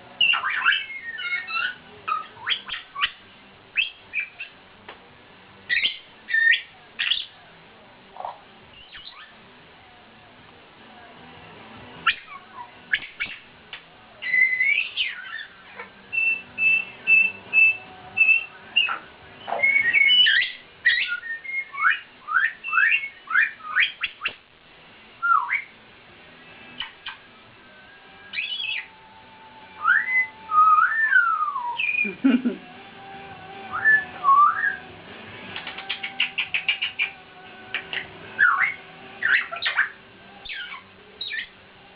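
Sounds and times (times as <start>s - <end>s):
parrots squawking: 0.2s - 3.2s, 3.8s - 4.6s, 8.2s - 9.4s, 12.0s - 13.5s, 14.2s - 24.3s, 26.8s - 27.3s, 28.3s - 29.0s, 29.8s - 32.3s, 35.6s - 41.6s
parrots whistling: 0.2s - 4.6s, 5.7s - 7.4s, 8.2s - 9.4s, 12.0s - 13.5s, 14.2s - 24.4s, 25.2s - 25.7s, 26.8s - 27.3s, 28.1s - 29.1s, 29.8s - 33.1s, 33.7s - 34.8s, 35.6s - 41.6s
sharp clicks: 35.5s - 38.1s.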